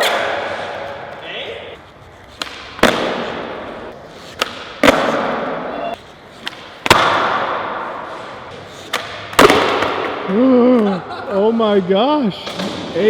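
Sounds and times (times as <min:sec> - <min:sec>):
skateboard landing slam: 0:02.4 - 0:03.6, 0:04.4 - 0:05.7, 0:06.8 - 0:07.8, 0:09.0 - 0:10.2
skateboard tail pop: 0:08.9 - 0:10.2.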